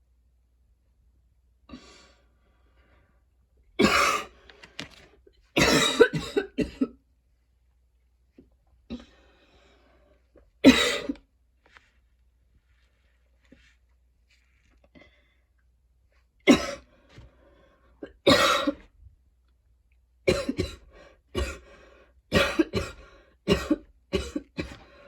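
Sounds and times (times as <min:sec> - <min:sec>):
woman coughing: 0:03.8 - 0:04.3, 0:05.6 - 0:07.0, 0:10.6 - 0:11.2, 0:16.5 - 0:16.8, 0:18.0 - 0:18.8, 0:20.3 - 0:21.6, 0:22.3 - 0:24.8.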